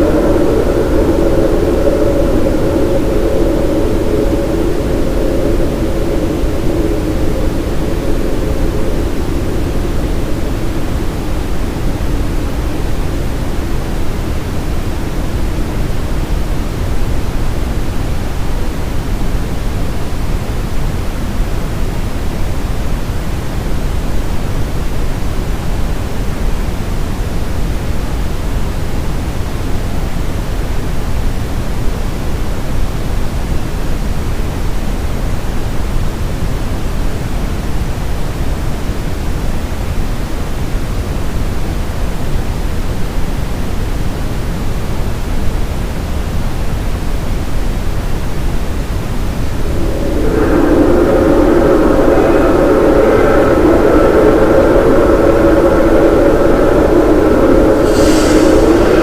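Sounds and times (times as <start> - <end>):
brown noise: 0.0 - 22.0, 48.2 - 59.0.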